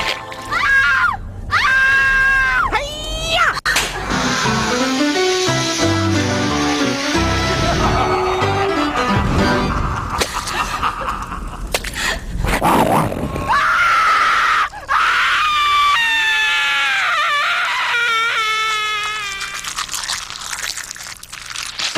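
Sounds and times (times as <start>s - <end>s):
long high-pitched scream: 13.5s - 19.7s.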